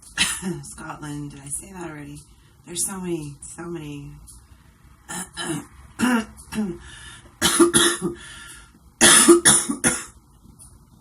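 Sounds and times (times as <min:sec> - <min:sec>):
woman coughing: 0:00.2 - 0:00.6, 0:05.1 - 0:06.3, 0:07.4 - 0:08.2, 0:09.0 - 0:10.2.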